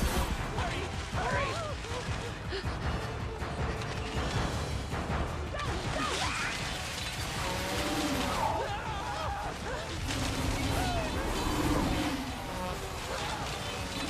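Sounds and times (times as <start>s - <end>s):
cartoon action music: 0.0s - 14.0s
gliding vocal-like cries: 6.0s - 14.0s.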